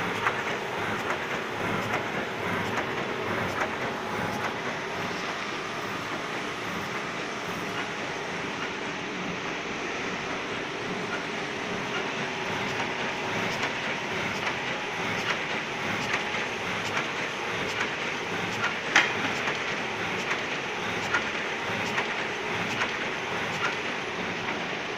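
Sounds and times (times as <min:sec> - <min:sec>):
machine clattering and clicking: 0:00.0 - 0:05.2, 0:10.8 - 0:24.8.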